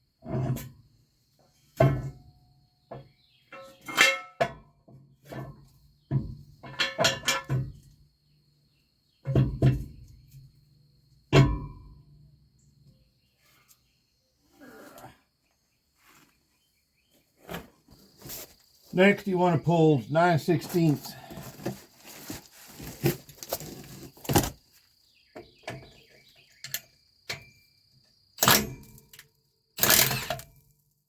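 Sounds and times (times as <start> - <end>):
metal clanks and knocks: 2.9 - 7.9, 11.3 - 12.0.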